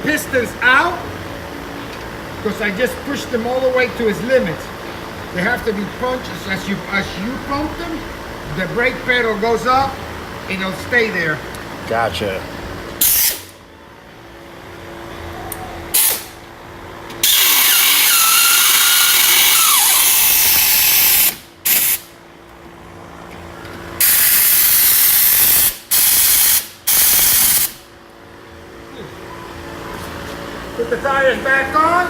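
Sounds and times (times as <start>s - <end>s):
air impact wrench bursts: 13.0s - 13.6s, 15.9s - 16.4s, 17.2s - 22.2s, 24.0s - 27.9s.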